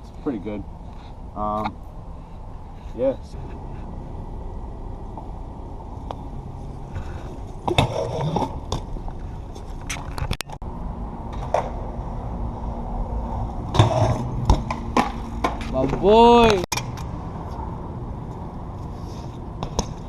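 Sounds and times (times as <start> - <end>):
bike tyres rolling: 0.0 - 10.6.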